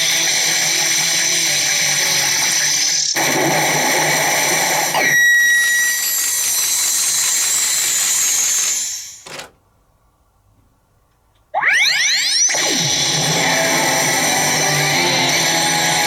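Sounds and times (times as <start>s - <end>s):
steady beep: 5.0s - 7.2s.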